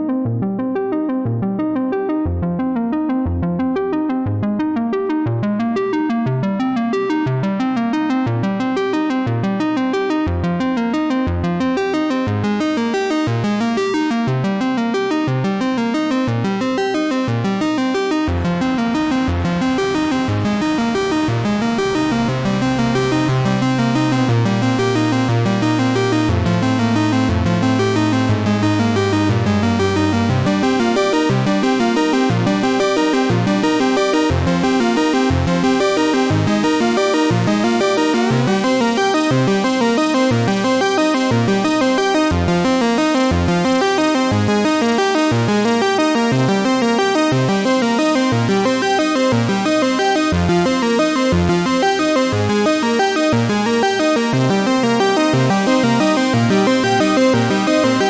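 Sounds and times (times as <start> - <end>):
synthesizer note pattern: 17.4 - 58.0
sustained low bass note: 18.3 - 31.5.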